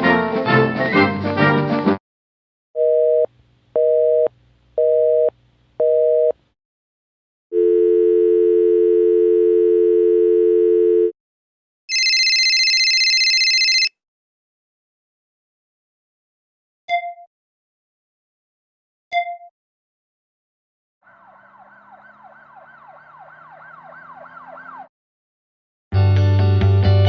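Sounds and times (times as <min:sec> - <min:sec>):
telephone dial tone: 0:07.5 - 0:11.2, 0:11.9 - 0:13.9
telephone busy signal beeps: 0:07.6 - 0:11.1, 0:11.9 - 0:13.9
electronic telephone ring: 0:11.9 - 0:13.9.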